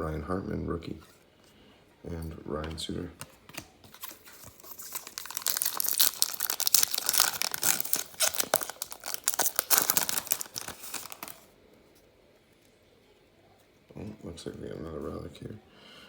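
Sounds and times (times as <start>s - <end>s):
plastic wrapper tearing and crinkling: 3.5s - 11.5s.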